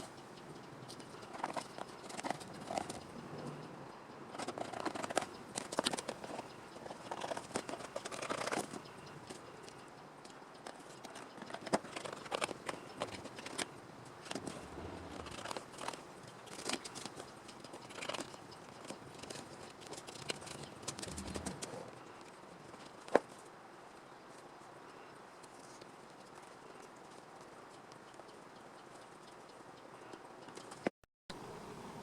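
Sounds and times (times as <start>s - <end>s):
light rustles taps and clicks: 0.0s - 23.5s.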